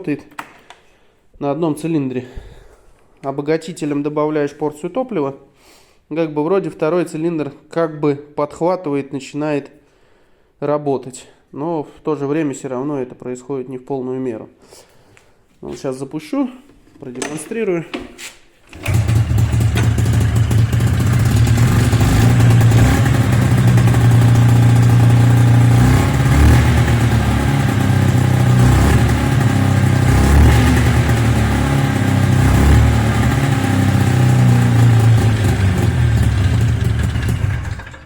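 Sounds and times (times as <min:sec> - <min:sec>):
snowmobile engine running rough: 0:18.8 - 0:38.0.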